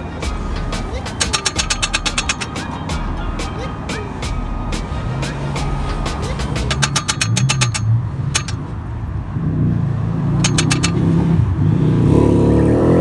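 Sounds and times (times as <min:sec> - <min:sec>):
sharp clicks: 0:00.7 - 0:03.6, 0:06.1 - 0:08.6, 0:10.4 - 0:11.0
vehicle engine revving: 0:11.0 - 0:13.0.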